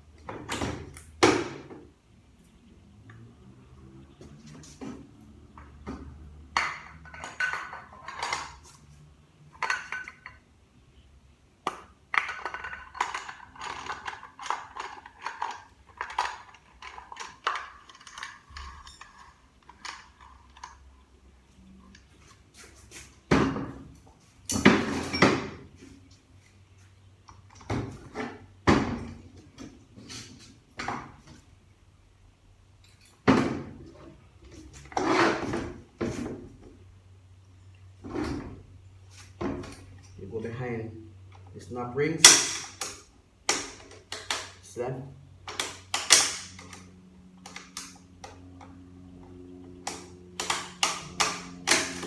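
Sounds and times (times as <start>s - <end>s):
steel parts clinking and knocking: 6.5s - 8.7s, 9.5s - 10.5s, 11.7s - 20.9s, 42.2s - 44.6s, 45.4s - 46.8s, 49.9s - 52.0s
metal parts scraping: 12.1s - 21.0s.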